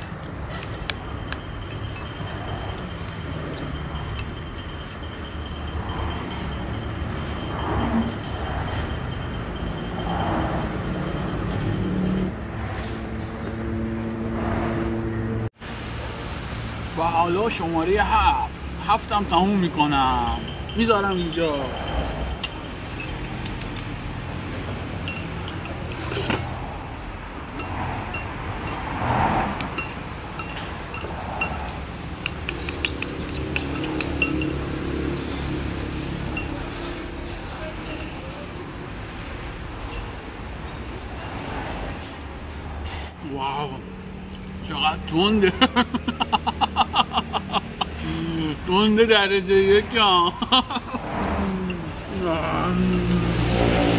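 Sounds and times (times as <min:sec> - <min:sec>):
utensils clinking against a bowl: 0:00.0 - 0:09.6, 0:19.5 - 0:26.6, 0:27.5 - 0:35.5, 0:36.2 - 0:38.5
road traffic noise: 0:00.0 - 0:53.9.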